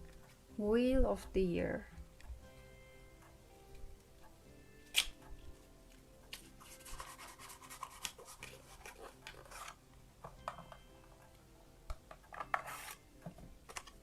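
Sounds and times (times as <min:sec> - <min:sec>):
cards rustling and clicking: 0:06.3 - 0:09.8, 0:12.1 - 0:13.0, 0:13.6 - 0:14.0.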